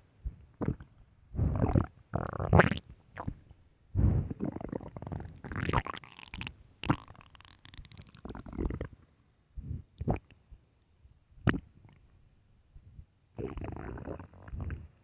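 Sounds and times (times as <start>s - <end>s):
stomach growling: 0.6s - 3.4s, 4.0s - 9.0s, 13.4s - 15.0s.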